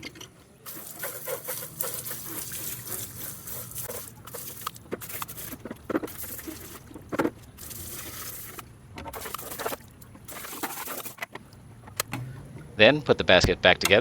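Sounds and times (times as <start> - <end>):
hose water spattering on plastic: 0.6 - 11.5.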